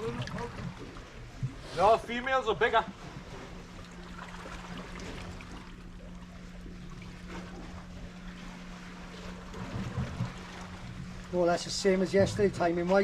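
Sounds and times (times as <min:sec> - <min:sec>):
constant low hum: 0:00.0 - 0:13.0
seawater lapping at shoreline: 0:00.0 - 0:13.0.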